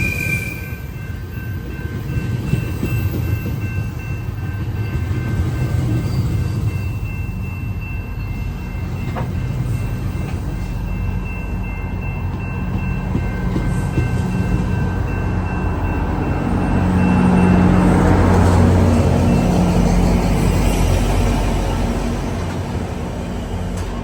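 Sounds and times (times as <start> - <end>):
diesel train passing: 0.0 - 24.0.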